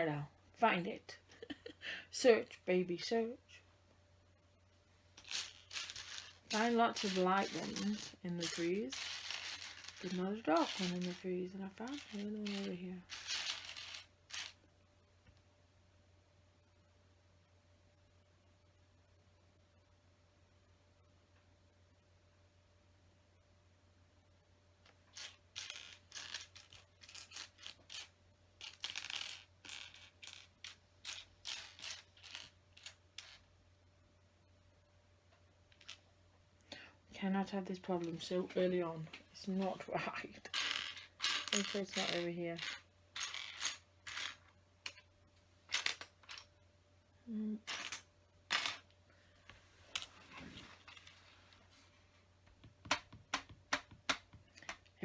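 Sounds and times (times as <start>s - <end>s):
plastic pieces clattering: 5.2s - 14.6s.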